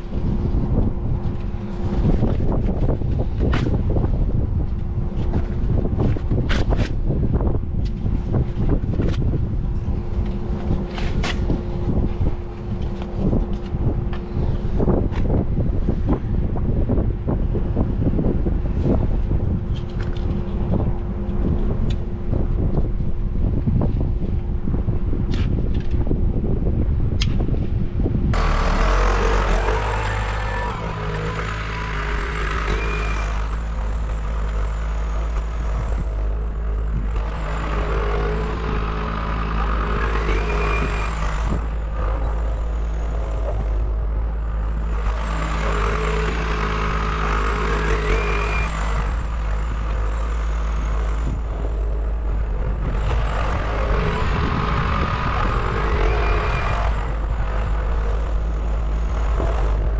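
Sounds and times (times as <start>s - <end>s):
engine running deep hum: 0.0s - 59.9s
higher whining tones: 28.3s - 59.9s.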